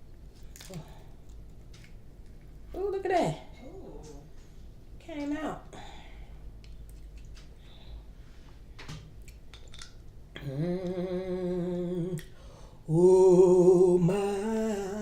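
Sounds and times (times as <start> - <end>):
person humming while eating: 10.3 - 15.0.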